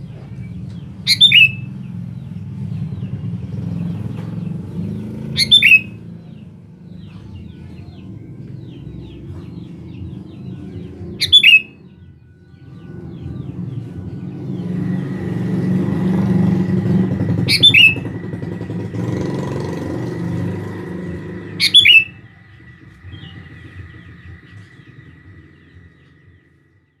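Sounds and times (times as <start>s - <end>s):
passing motor vehicle rumble: 0.0s - 27.0s
bird giving sharp calls: 1.0s - 1.8s, 5.2s - 6.2s, 11.2s - 11.8s, 17.4s - 18.2s, 21.5s - 22.3s.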